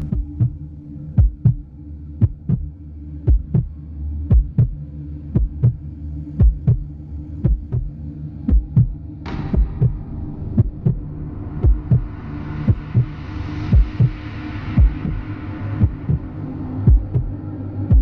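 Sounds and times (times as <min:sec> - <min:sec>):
heartbeat thumping: 0:00.0 - 0:00.6, 0:01.2 - 0:01.6, 0:02.2 - 0:02.7, 0:03.3 - 0:03.7, 0:04.3 - 0:04.8, 0:05.4 - 0:05.8, 0:06.4 - 0:07.9, 0:08.5 - 0:09.0, 0:09.6 - 0:10.0, 0:10.6 - 0:11.0, 0:11.6 - 0:12.1, 0:12.7 - 0:13.1, 0:13.7 - 0:14.2, 0:14.8 - 0:15.2, 0:15.8 - 0:16.2, 0:16.9 - 0:17.3
steady low hum: 0:00.0 - 0:18.0.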